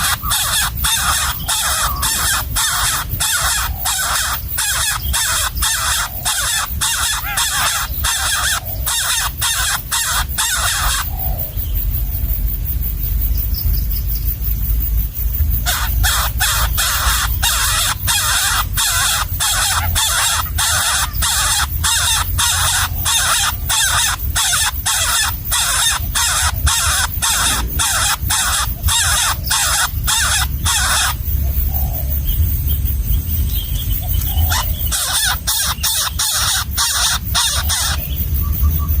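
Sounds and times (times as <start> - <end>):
nestling begging calls: 0.0 - 11.8, 15.5 - 39.0
low rumble: 11.3 - 39.0.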